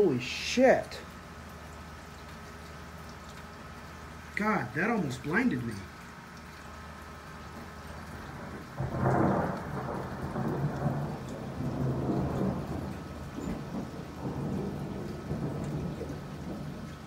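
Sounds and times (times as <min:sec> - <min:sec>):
thunder crack and rumble: 0:08.0 - 0:17.0.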